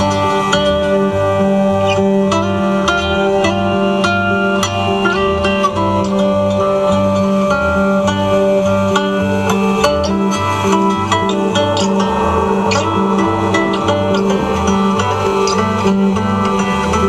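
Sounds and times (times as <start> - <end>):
plucked guitar: 0.0 - 17.0
repeating bass line: 10.3 - 16.2.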